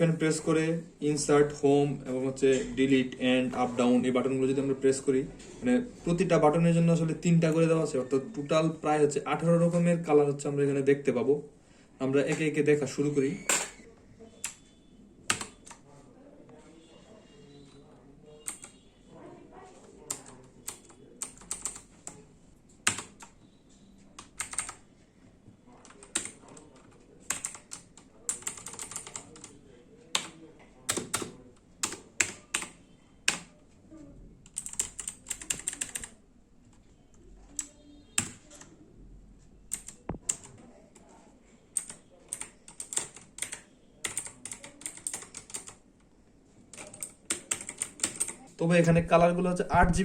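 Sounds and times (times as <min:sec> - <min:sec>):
mechanical keyboard clicks: 0:39.7 - 0:40.5, 0:41.8 - 0:45.8.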